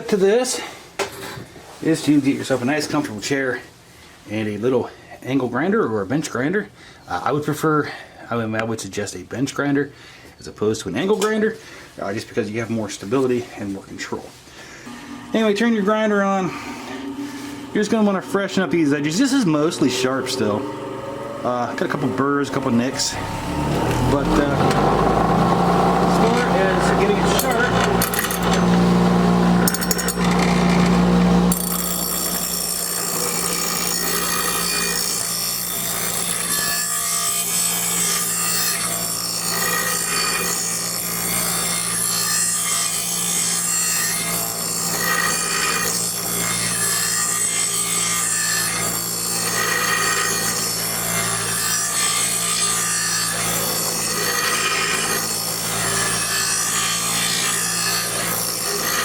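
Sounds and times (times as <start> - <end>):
bench grinder grinding metal blade: 14.9 - 59.0.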